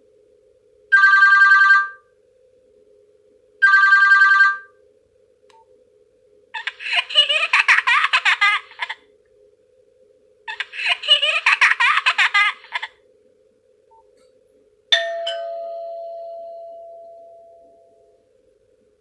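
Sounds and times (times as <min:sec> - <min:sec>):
giggling laughter ringtone: 0:06.6 - 0:09.0, 0:10.5 - 0:13.0
two-note doorbell ding-dong: 0:14.9 - 0:18.2.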